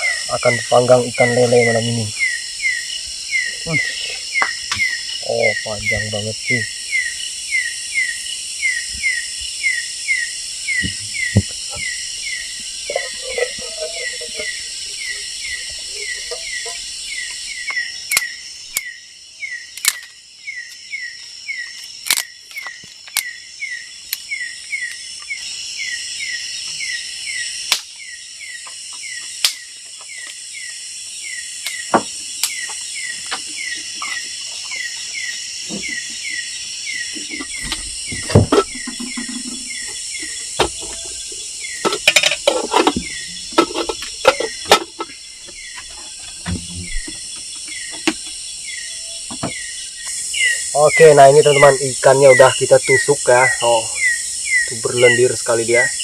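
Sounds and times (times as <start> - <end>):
falling insect chirps: 0.0 - 56.0
insect buzzing: 0.0 - 56.0
sharp clicks and knocks: 37.2 - 48.4.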